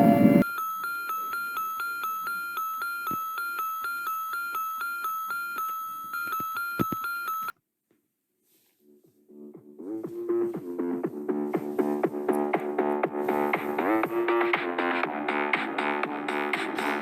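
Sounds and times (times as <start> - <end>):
rapid electronic alarm beeps: 0.0 - 7.5.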